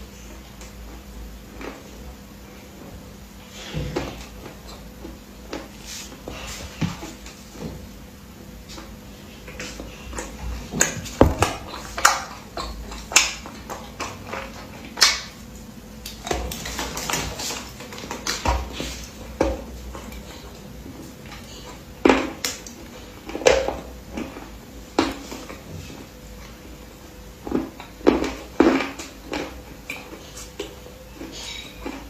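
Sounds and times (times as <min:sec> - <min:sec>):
crunchy food being chewed: 0:19.8 - 0:32.0.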